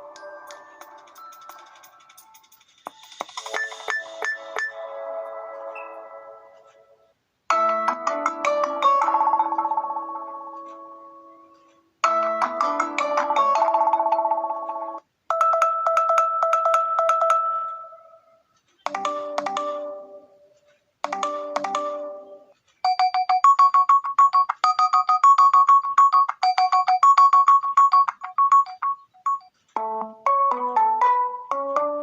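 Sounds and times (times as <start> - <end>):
fast repeating beeping notes: 2.9 - 4.9
short melodic chime phrases: 3.4 - 6.7
phone alarm chimes: 22.8 - 29.6.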